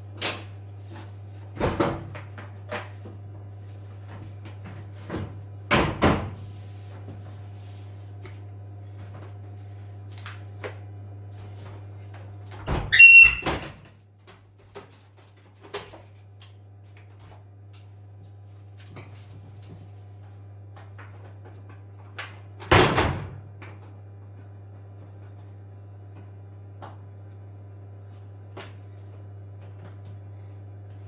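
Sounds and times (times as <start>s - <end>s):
brief high squeak: 12.9s - 13.6s.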